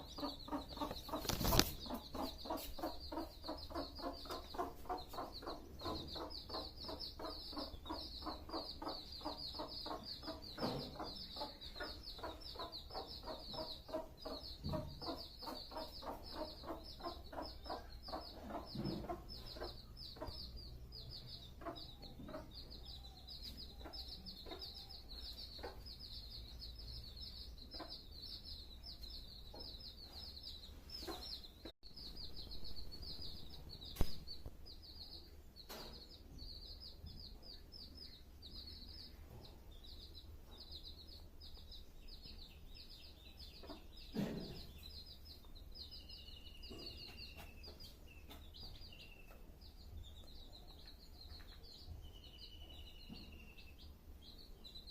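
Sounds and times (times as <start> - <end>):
hen clucking: 0.0 - 32.4, 42.0 - 49.6
chicks peeping: 0.0 - 54.9.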